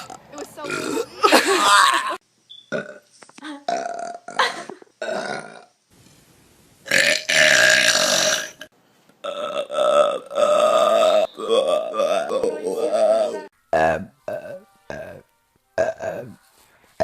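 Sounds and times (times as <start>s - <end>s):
person burping: 0.0s - 2.0s, 2.7s - 5.7s, 6.9s - 15.2s, 15.8s - 16.4s.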